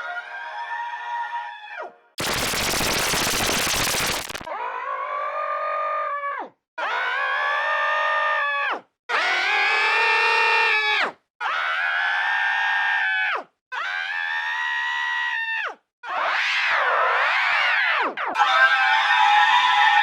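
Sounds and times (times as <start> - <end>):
harsh rattling noise burst: 2.2 - 4.5.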